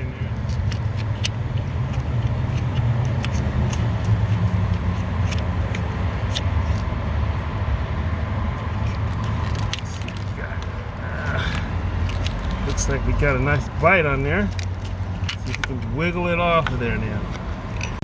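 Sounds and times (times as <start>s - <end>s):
pliers clicking and scraping metal: 11.5s - 18.0s.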